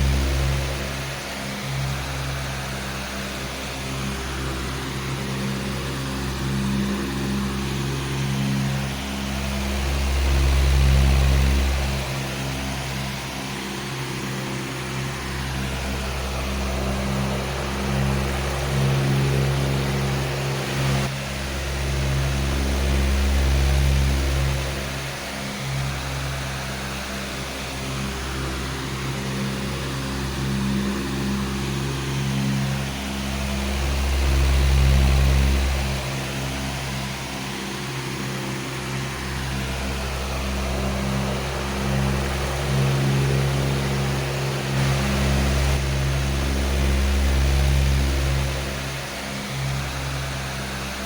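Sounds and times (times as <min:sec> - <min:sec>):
electric fan running: 0:00.0 - 0:51.0.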